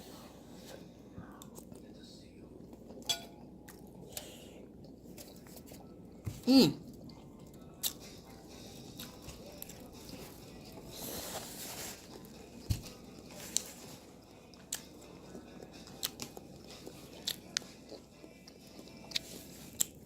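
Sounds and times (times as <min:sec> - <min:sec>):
person chewing and smacking: 0:06.8 - 0:11.0, 0:12.0 - 0:20.0.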